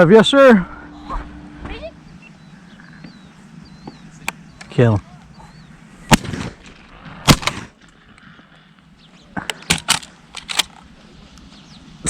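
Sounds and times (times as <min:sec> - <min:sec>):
faint sharp clicks: 0:03.8 - 0:05.4, 0:06.5 - 0:11.5
shotgun shots: 0:06.1 - 0:07.9, 0:09.5 - 0:10.9.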